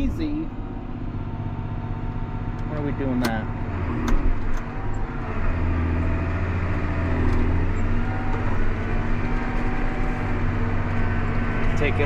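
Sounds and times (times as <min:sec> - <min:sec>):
tractor diesel engine drone: 0:00.0 - 0:12.0
sharp click: 0:03.2 - 0:03.4.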